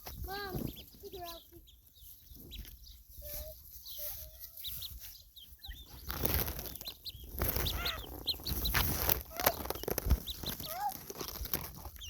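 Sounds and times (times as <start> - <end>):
ducklings peeping: 0.0 - 12.0
rustling of bedding: 5.9 - 12.0.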